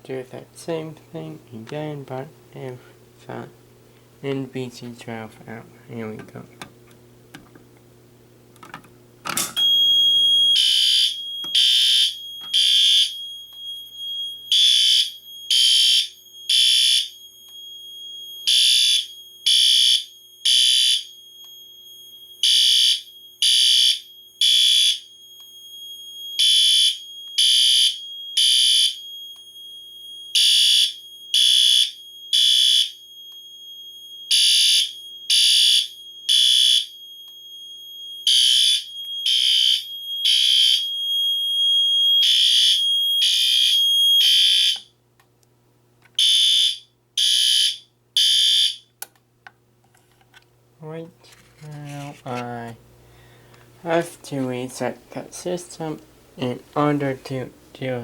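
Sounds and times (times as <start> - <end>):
high steady tone: 9.6 - 44.4
fire alarm horn blasts: 9.6 - 44.9, 46.2 - 48.9.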